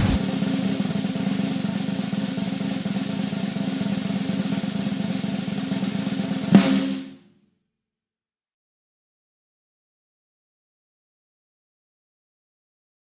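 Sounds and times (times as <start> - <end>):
final drum hit: 0.0 - 2.2, 6.5 - 7.1
drum roll: 0.0 - 7.2.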